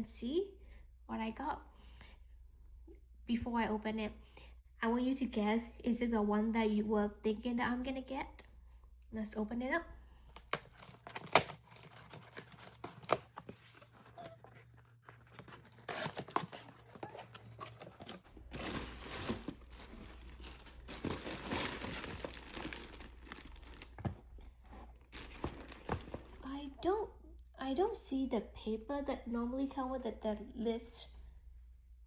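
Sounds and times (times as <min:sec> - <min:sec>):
packaging tearing and crinkling: 0:10.5 - 0:24.2, 0:24.8 - 0:26.4.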